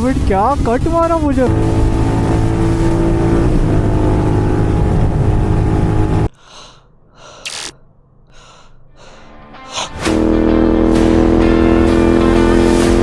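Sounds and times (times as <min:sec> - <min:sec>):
motorcycle engine running: 0:00.0 - 0:06.3, 0:10.1 - 0:13.0
breathy puffs: 0:06.3 - 0:10.0.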